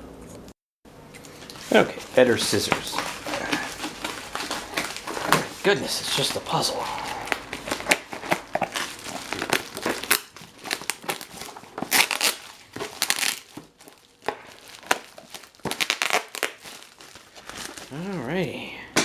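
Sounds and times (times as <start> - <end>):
plastic packaging tearing and crinkling: 1.4 - 18.4.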